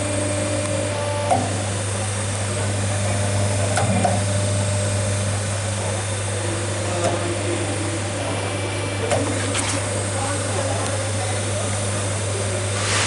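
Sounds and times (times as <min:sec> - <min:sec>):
low mechanical hum with hiss: 0:00.0 - 0:13.0.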